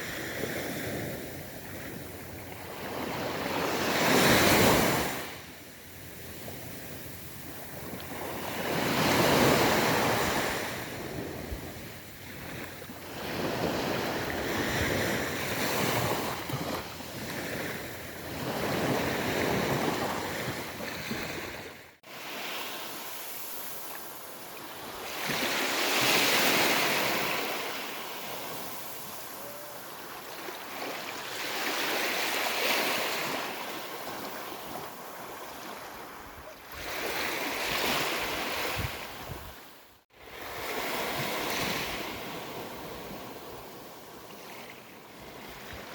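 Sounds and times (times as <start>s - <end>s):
ocean waves breaking on a beach: 0.0s - 45.9s.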